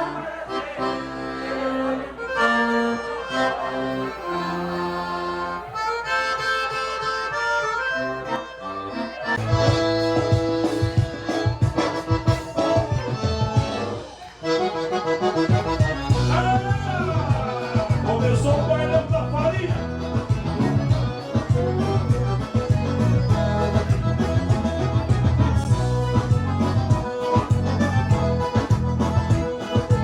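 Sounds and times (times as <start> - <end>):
accordion melody: 0.0 - 30.0
bass: 0.0 - 30.0
drum beat: 9.4 - 13.9, 15.5 - 30.0.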